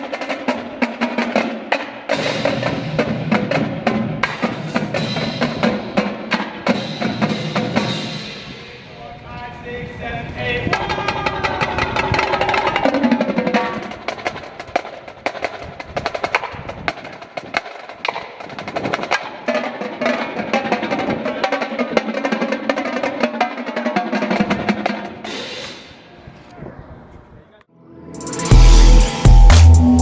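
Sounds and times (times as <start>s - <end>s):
pitched percussion notes: 27.9s - 30.0s
snare drum strokes and rolls: 28.2s - 30.0s.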